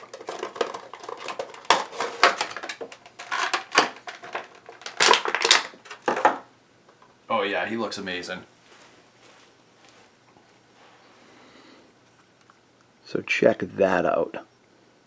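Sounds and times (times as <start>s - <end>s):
cardboard box and plastic crinkling: 0.0s - 6.4s.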